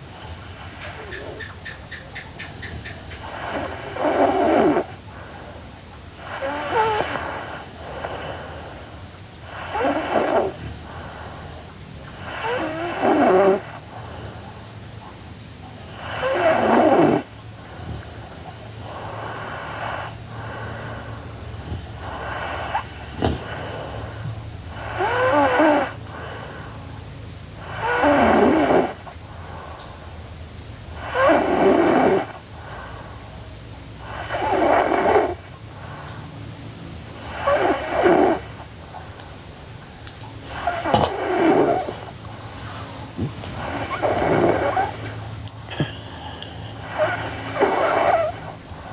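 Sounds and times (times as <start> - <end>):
quiet breathing: 0.0 - 16.3, 17.3 - 34.8, 35.4 - 48.9
girl snoring: 3.2 - 5.0, 6.2 - 8.6, 9.4 - 10.9, 12.2 - 13.9, 15.9 - 18.2, 18.8 - 26.4, 27.6 - 29.2, 31.0 - 32.9, 34.0 - 35.6, 37.2 - 38.7, 40.4 - 48.9.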